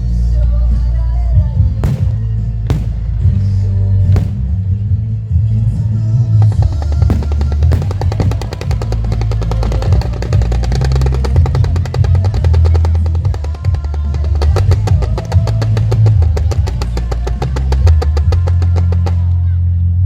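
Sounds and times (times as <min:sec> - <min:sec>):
music with heavy bass: 0:00.0 - 0:19.7
rapid sharp clicks: 0:06.5 - 0:19.3.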